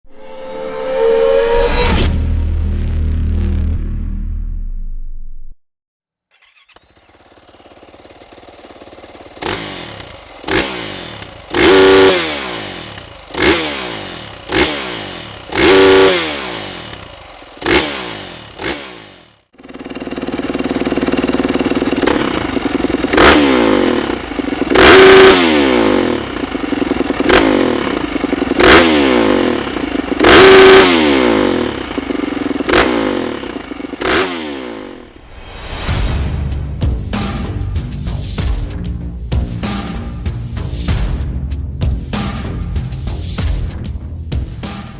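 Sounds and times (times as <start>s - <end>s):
motorcycle engine idling and revving: 6.3s - 35.3s, 36.5s - 44.9s.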